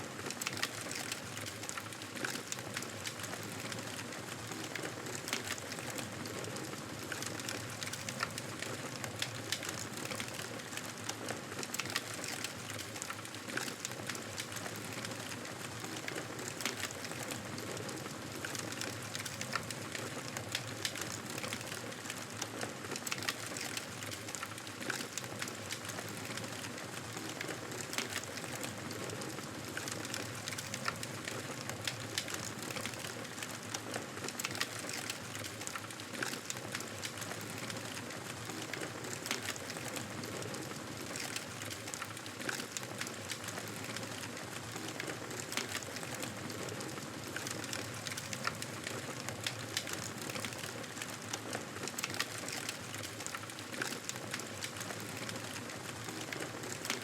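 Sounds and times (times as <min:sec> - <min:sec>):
wood fire crackling: 0:00.1 - 0:57.0.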